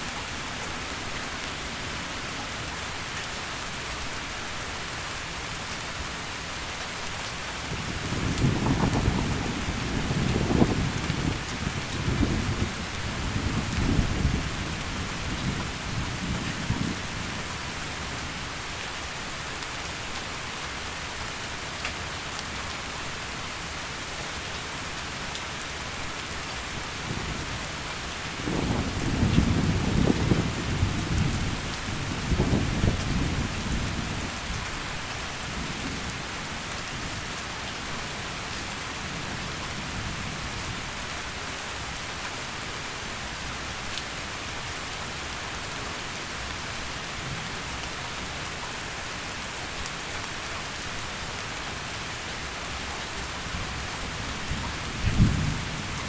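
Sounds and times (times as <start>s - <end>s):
heavy rain falling: 0.0s - 56.0s
thunder rumbling: 8.0s - 14.8s, 28.4s - 34.3s, 54.5s - 56.0s.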